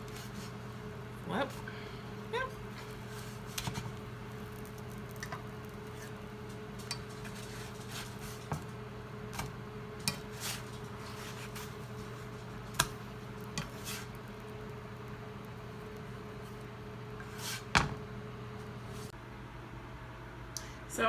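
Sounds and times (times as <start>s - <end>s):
steady low hum: 0.0s - 21.0s
utensils scraping frying pan: 2.7s - 8.7s, 10.0s - 14.4s, 16.4s - 17.8s.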